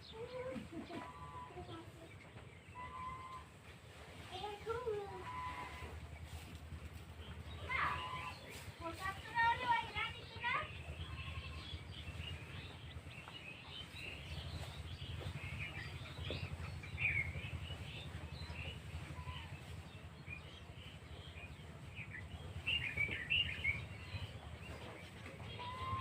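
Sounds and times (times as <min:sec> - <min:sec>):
small birds chirping: 0:00.0 - 0:26.0
steady low rumble: 0:00.0 - 0:26.0.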